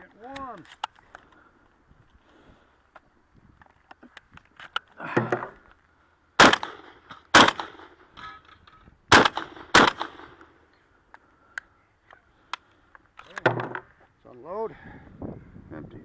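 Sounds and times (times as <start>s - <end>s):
shotgun shots: 6.4s - 8.0s, 9.1s - 10.4s.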